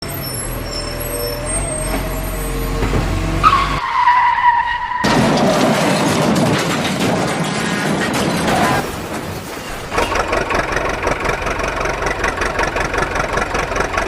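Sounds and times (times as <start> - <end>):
tyre skid squeal: 0.0 - 5.6
vehicle engine running: 9.9 - 14.0.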